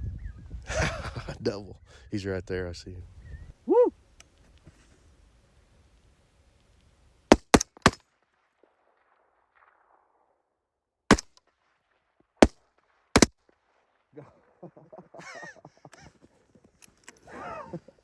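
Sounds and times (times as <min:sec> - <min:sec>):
rifle shots: 0:07.3 - 0:08.0, 0:11.1 - 0:13.4.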